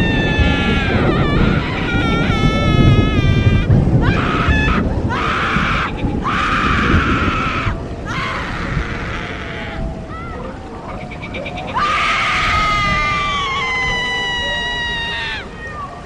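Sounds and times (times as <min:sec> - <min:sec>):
long high-pitched screams: 0:00.0 - 0:10.4, 0:11.7 - 0:15.7.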